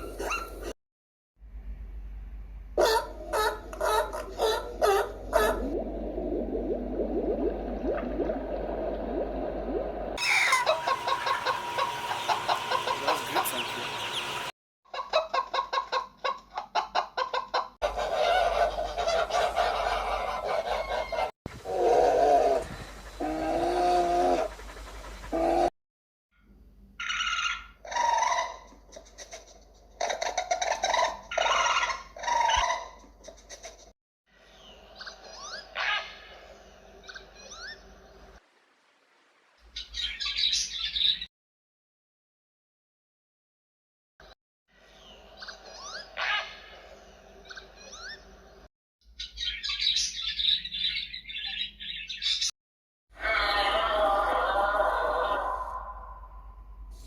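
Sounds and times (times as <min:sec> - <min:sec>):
animal high-pitched cries: 0:10.2 - 0:11.9
birds chirping: 0:10.2 - 0:14.5.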